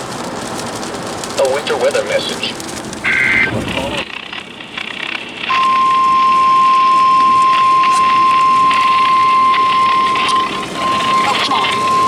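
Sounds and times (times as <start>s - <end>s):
radio background hiss: 1.2s - 12.0s
steady alarm beep: 5.5s - 12.0s.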